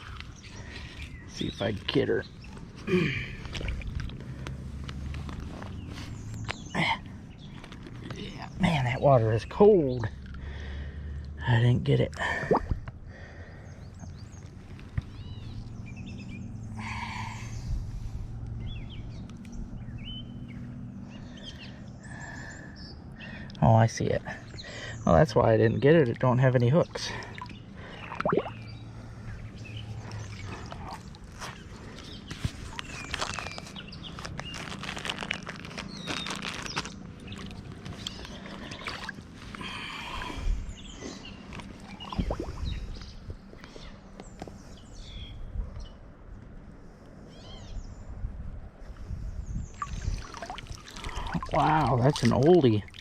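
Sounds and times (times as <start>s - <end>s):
low outdoor rumble: 0.0s - 53.0s
small birds chirping: 0.0s - 53.0s
creek water sloshing and splashing: 26.9s - 33.0s, 37.4s - 40.2s, 41.2s - 42.7s, 49.6s - 53.0s.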